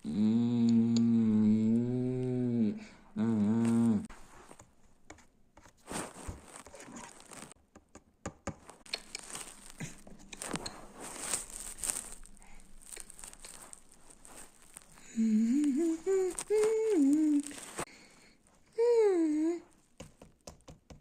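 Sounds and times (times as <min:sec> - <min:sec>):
person humming: 0:00.0 - 0:04.1, 0:08.9 - 0:17.9, 0:18.7 - 0:19.8
rustling: 0:00.0 - 0:07.6, 0:08.4 - 0:20.4
faint clicks: 0:00.2 - 0:01.9.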